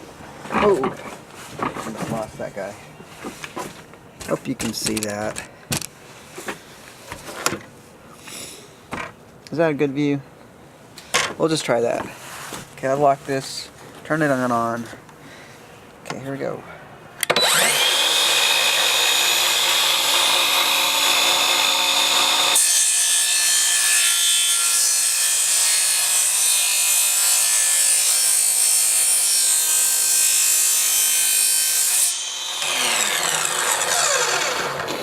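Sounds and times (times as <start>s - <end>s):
miter saw cutting board: 17.3s - 35.0s.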